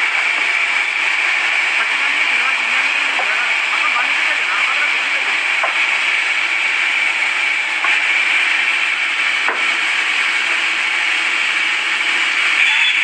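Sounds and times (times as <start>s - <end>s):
saw cutting through timber: 0.0s - 13.0s.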